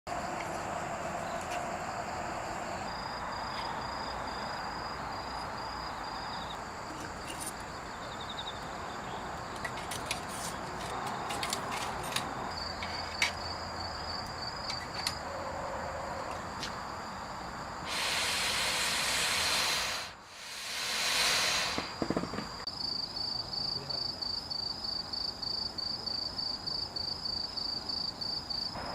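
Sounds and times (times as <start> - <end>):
insects chirping: 0.1 - 28.9
background hiss: 12.8 - 28.9.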